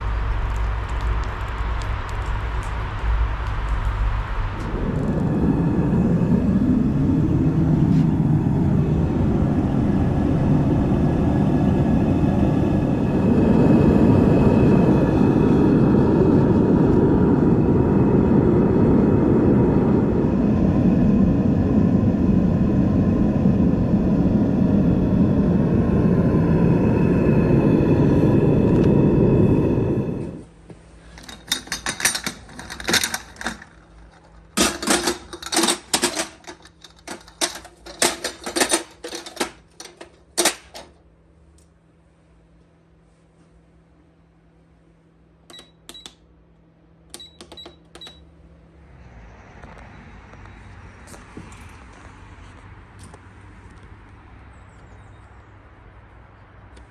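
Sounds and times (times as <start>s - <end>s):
gas burner rushing: 0.0s - 41.0s
sharp clicks and clatter: 31.2s - 41.0s.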